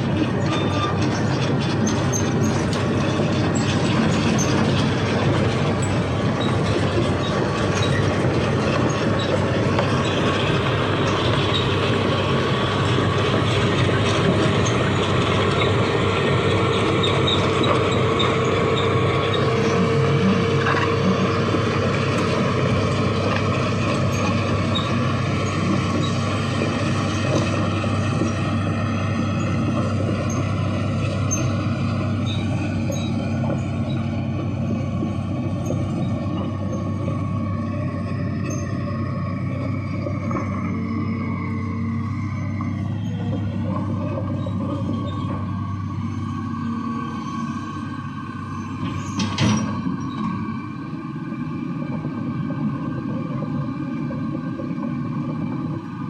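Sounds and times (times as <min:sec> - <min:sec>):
heavy diesel machinery running: 0:00.0 - 0:56.0
held whine: 0:00.0 - 0:56.0.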